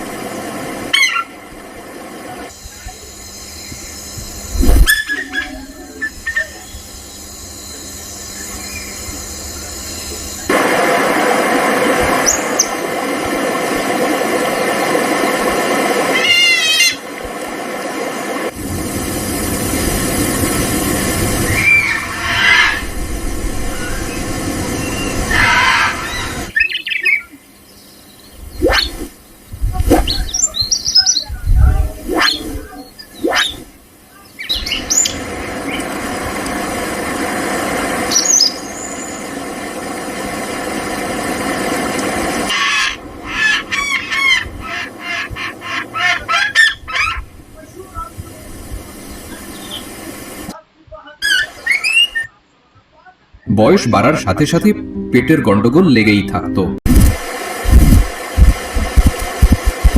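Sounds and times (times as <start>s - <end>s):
steady rushing noise: 10.4s - 16.2s, 17.0s - 26.6s, 34.8s - 43.3s, 56.8s - 59.9s
birds squealing and chirping: 21.5s - 23.0s, 23.7s - 27.3s, 42.5s - 47.3s, 51.2s - 52.4s.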